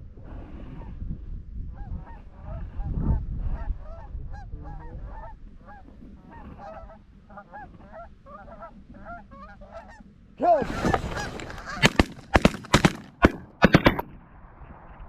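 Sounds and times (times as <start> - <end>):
geese honking: 3.5 - 13.9
low rumble: 13.0 - 15.0.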